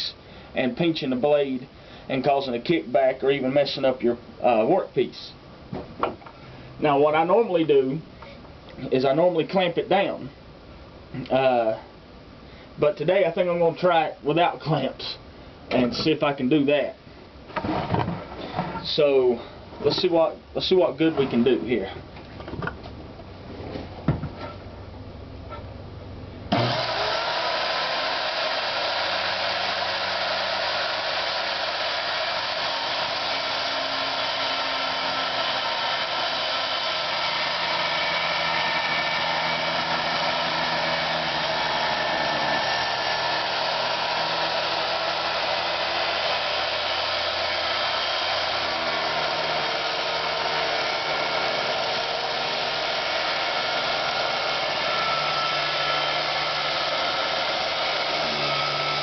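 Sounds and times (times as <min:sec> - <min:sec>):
circular saw cutting wood: 0:26.5 - 0:59.0.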